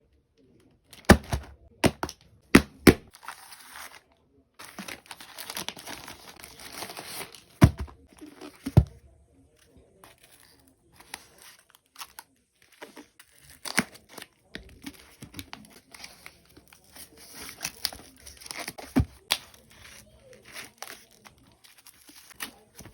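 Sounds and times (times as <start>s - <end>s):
package taps and thumps: 1.0s - 3.1s, 7.6s - 9.0s
packaging tearing and crinkling: 3.1s - 4.0s, 4.6s - 8.1s.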